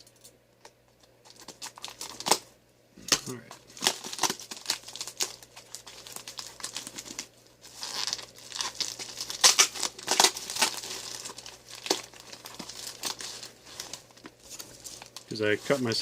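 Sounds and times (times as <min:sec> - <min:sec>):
packing tape and cardboard tearing: 0:01.2 - 0:02.4, 0:03.1 - 0:16.0.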